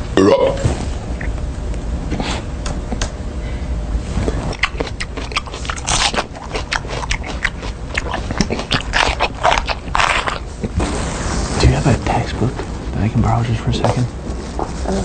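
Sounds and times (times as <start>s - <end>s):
person chewing crunchy food: 4.2s - 10.9s.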